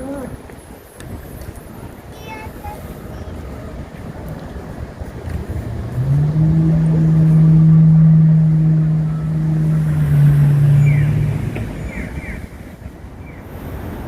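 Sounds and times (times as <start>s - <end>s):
vehicle engine passing: 4.5s - 13.0s.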